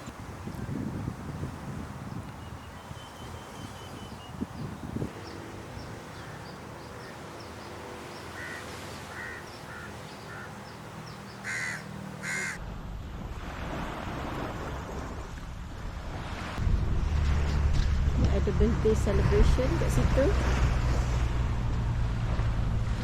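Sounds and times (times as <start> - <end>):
wind rumble on microphone: 0.0 - 6.6, 12.6 - 23.0
bird calling: 2.4 - 12.6
loud harsh caw-like calls: 8.4 - 10.6, 11.4 - 12.6.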